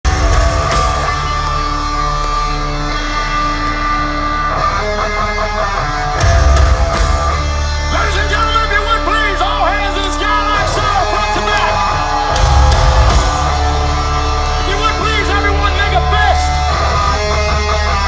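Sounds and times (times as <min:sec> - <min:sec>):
electric guitars: 0:00.0 - 0:18.0
live rock band: 0:00.0 - 0:18.0
heavy low end: 0:11.8 - 0:15.7.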